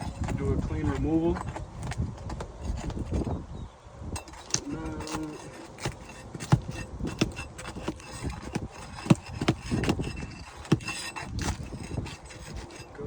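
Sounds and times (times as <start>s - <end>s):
shingle knocks and scrapes: 0.0s - 3.4s, 4.2s - 13.0s.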